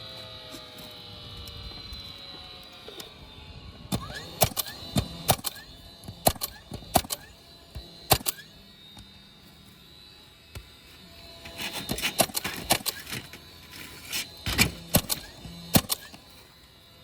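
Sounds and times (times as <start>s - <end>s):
sharp clicks or knocks: 14.5s - 16.2s.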